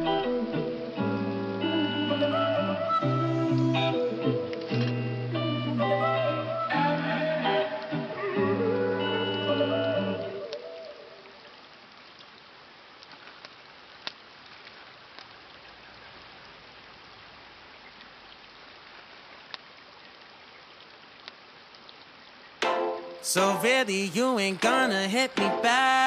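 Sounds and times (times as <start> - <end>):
steady rain falling: 0.0 - 26.0
sharp drip ticks: 13.0 - 15.4, 19.4 - 19.7.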